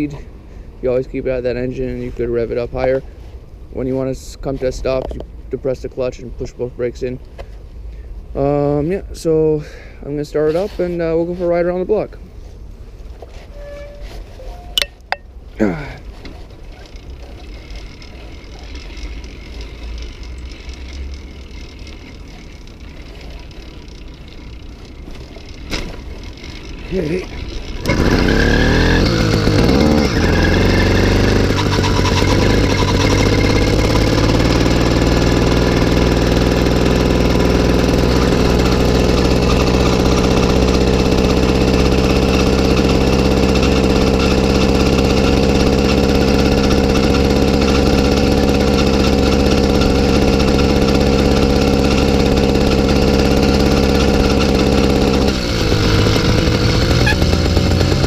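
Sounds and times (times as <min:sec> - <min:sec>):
two-stroke engine revving: 0:16.8 - 0:58.0.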